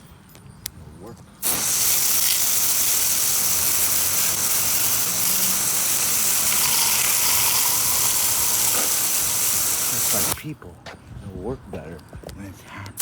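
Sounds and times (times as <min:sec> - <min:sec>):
water spray jet hissing: 0:01.4 - 0:10.4.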